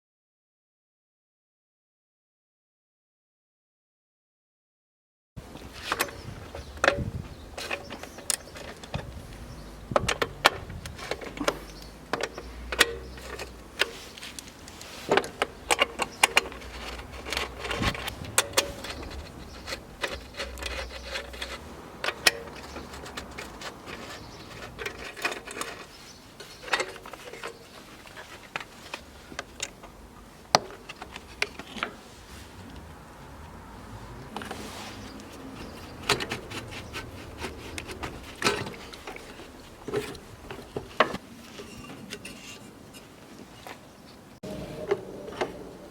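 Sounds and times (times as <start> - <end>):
small hard parts clicking and rattling: 5.7 - 32.1, 34.3 - 42.6.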